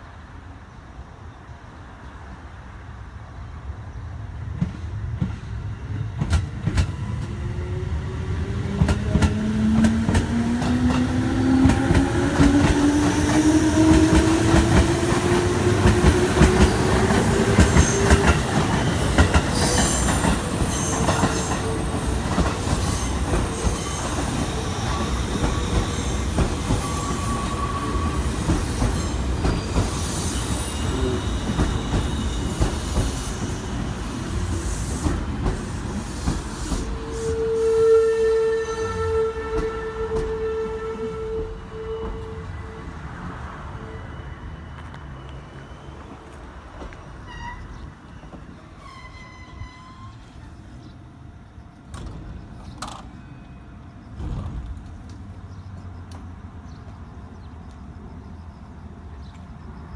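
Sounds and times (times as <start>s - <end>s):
train running rumble: 4.3s - 37.9s
train motor whine: 6.7s - 50.5s
wheels clacking over rail joints: 8.7s - 37.0s.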